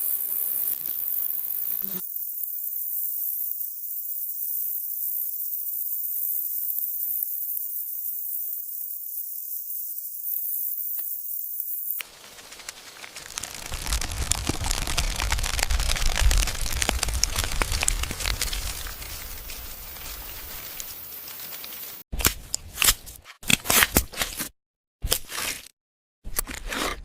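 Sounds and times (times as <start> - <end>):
dense crackling and rustling: 12.0 - 22.0.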